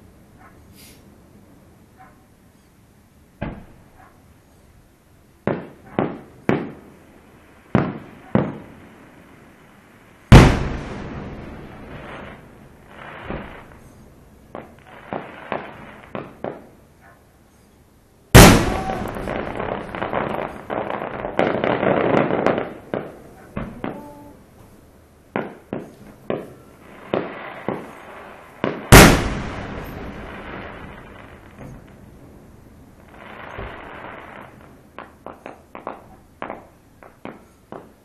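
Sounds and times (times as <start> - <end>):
firework pops: 3.4 - 3.8, 13.1 - 16.7, 18.4 - 24.1, 25.3 - 28.0, 33.4 - 34.4, 35.0 - 38.0
dense firework crackling: 5.4 - 16.8, 18.3 - 24.4, 25.3 - 38.0
loud firework shell burst: 18.3 - 20.6, 28.6 - 31.9.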